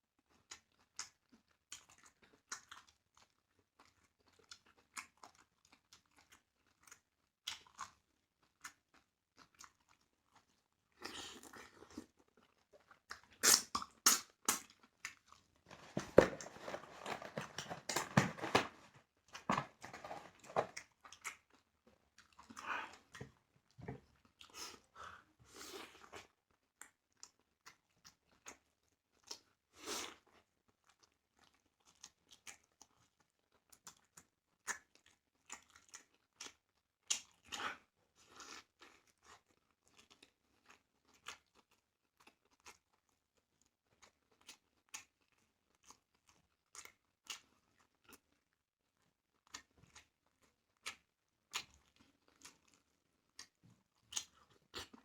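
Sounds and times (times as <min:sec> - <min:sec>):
person chewing: 0:00.4 - 0:23.3, 0:49.4 - 0:55.0
wet mouth clicks and smacks: 0:13.1 - 0:14.8.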